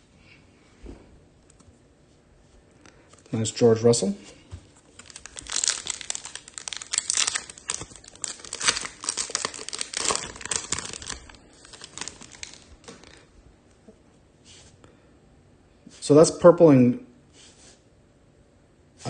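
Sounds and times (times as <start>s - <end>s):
wrapper tearing and crinkling: 4.8s - 13.3s.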